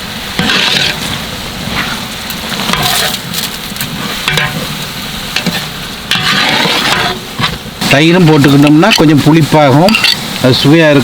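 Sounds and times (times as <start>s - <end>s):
food sizzling in a pot: 0.0s - 11.0s
spoon scraping a pot: 0.4s - 2.0s, 2.6s - 3.2s, 5.4s - 7.6s.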